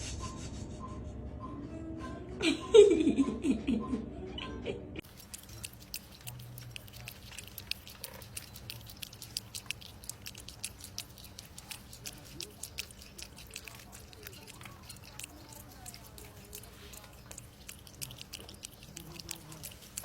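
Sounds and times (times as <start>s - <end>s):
animal chewing: 5.0s - 20.0s.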